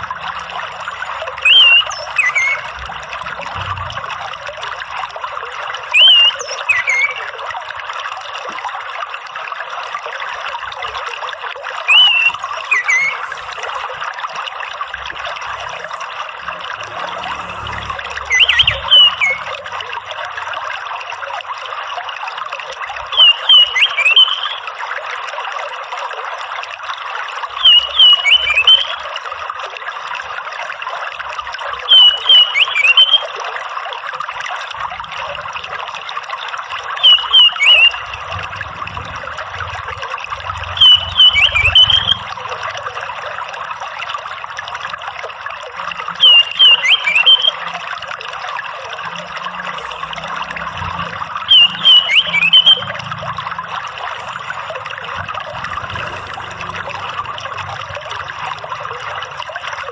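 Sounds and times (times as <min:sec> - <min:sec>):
trickling running water: 0:00.0 - 0:59.9
thrush calling high notes: 0:01.4 - 0:02.9, 0:05.9 - 0:07.3, 0:11.8 - 0:14.0, 0:15.4 - 0:20.0, 0:37.0 - 0:39.8, 0:40.5 - 0:43.1, 0:49.0 - 0:58.6.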